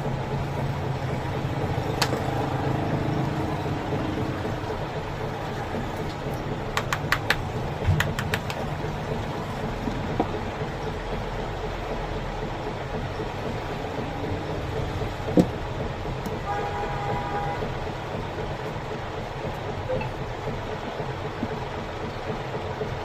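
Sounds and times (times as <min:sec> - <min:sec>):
low mechanical hum: 0:00.0 - 0:23.0.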